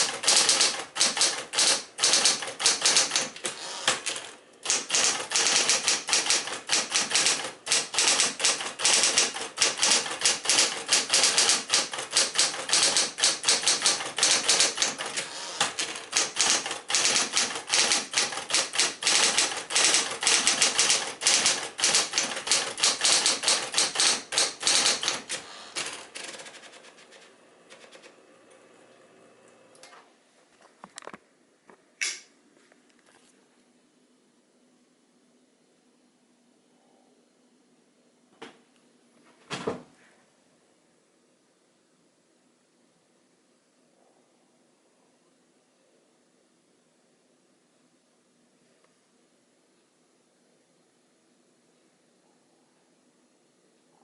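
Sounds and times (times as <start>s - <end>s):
electric typewriter typing: 0.0s - 28.2s.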